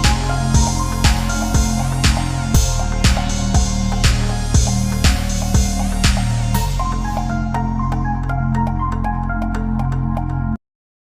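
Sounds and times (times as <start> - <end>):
electronic music with steady beat: 0.0 - 10.6.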